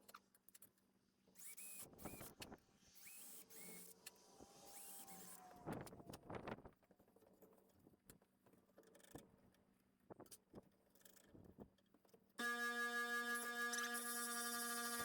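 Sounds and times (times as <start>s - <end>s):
electric drill whining: 12.4s - 15.0s.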